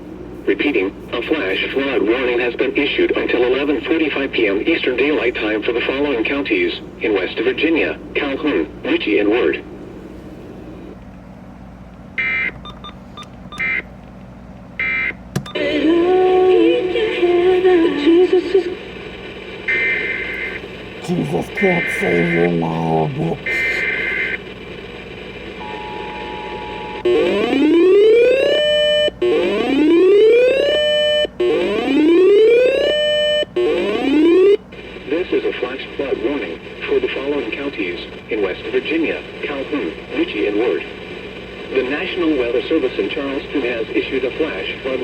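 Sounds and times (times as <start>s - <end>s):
low hum: 15.3s - 27.4s
whooping alarm tone over radio: 21.6s - 24.4s, 25.6s - 34.6s.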